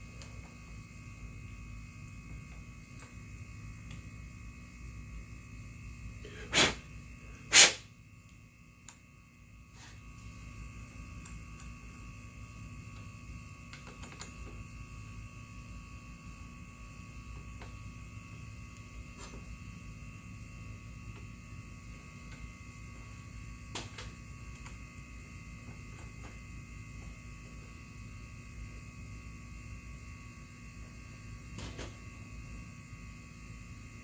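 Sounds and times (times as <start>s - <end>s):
electrical mains hum: 0.0s - 34.0s
loud hissing bursts: 6.2s - 7.9s.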